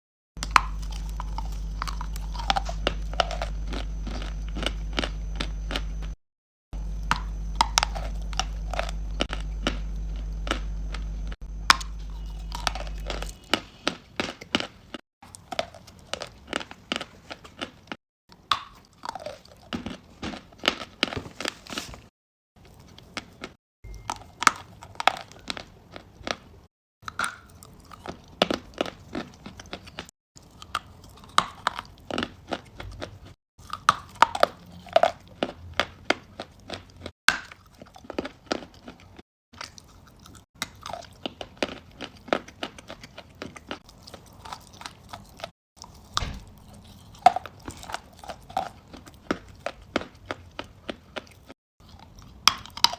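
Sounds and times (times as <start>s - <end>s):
chewing and crunching chalk: 0.4s - 6.2s, 6.8s - 52.9s
steady low hum: 0.4s - 6.2s, 6.8s - 13.9s.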